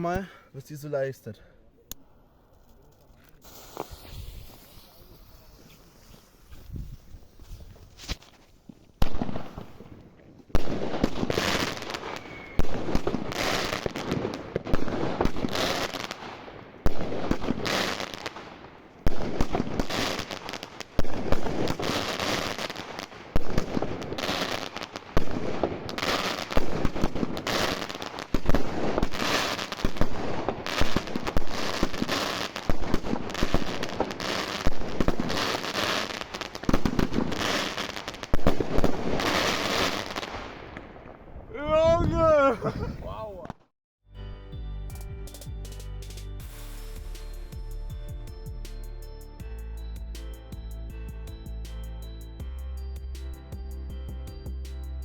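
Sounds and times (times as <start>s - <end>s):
firework battery shots crackling: 2.5s - 8.4s, 9.0s - 41.2s.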